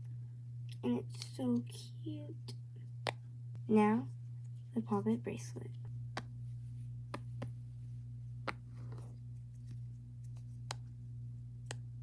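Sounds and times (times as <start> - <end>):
low hum: 0.0 - 12.0.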